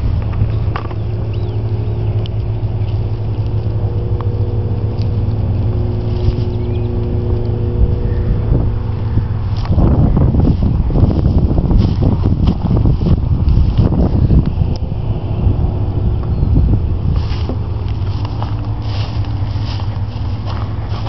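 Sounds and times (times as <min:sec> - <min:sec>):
faint held tones: 0:00.0 - 0:09.8
rough low rumble: 0:00.0 - 0:21.0
steady low hum: 0:00.0 - 0:21.0.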